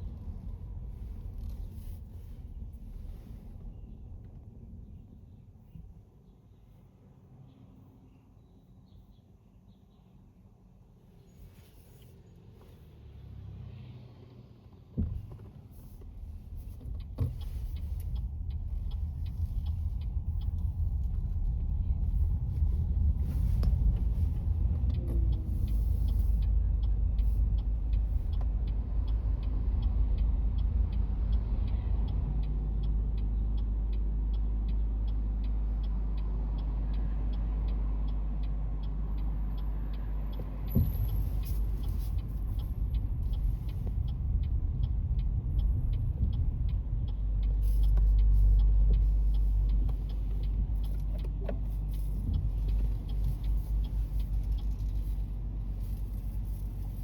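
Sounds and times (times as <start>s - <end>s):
car engine and tyre rumble: 0.0s - 57.0s
faint regular ticking: 15.8s - 57.0s.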